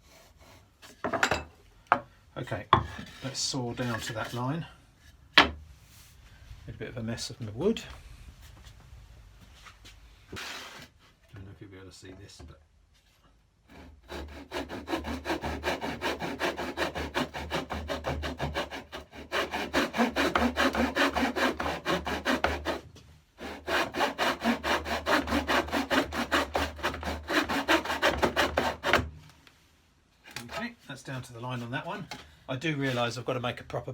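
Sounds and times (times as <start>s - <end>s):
hand saw cutting wood: 13.7s - 29.1s, 30.3s - 30.8s.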